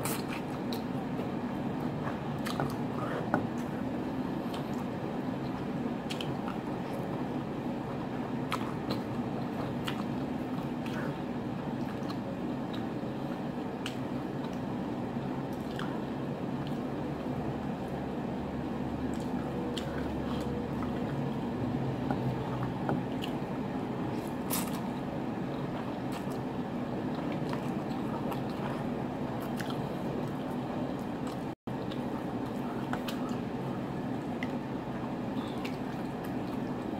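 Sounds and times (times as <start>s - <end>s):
steady low hum: 0.0s - 36.9s
wet chewing and biting: 24.1s - 25.0s, 27.1s - 30.4s.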